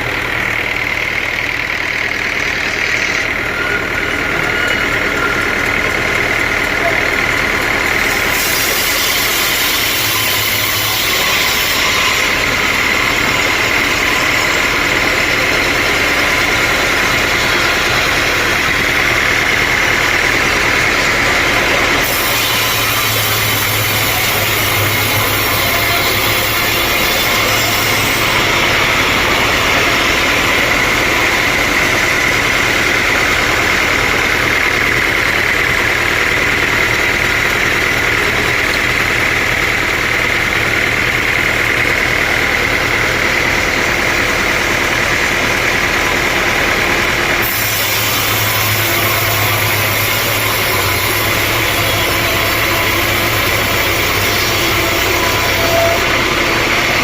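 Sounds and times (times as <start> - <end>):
sawmill whine: 0.0 - 57.0
saw cutting wood hiss: 7.7 - 36.2, 46.0 - 57.0.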